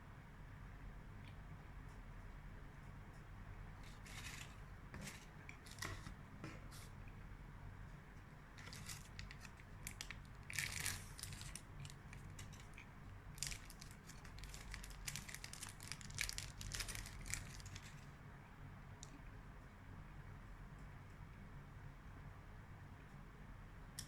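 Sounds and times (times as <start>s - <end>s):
wrapper crinkling: 3.9s - 6.1s, 8.6s - 18.1s.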